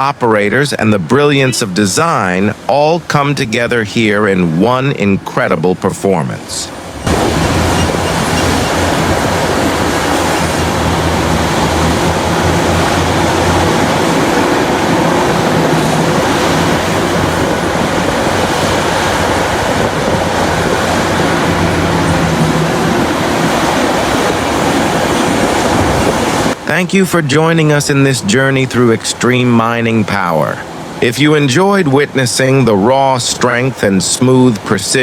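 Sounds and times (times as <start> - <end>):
diesel engine drone: 6.7 - 26.8
continuous machinery rumbling: 6.8 - 26.7.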